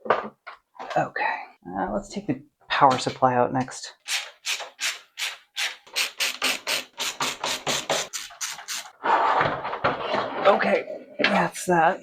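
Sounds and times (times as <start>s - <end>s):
screwdriver rasping strokes: 4.1s - 8.9s.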